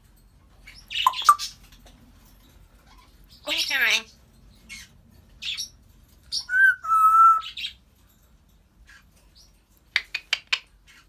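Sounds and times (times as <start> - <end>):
parrot chirping and whistling: 1.0 - 1.5, 6.4 - 7.6.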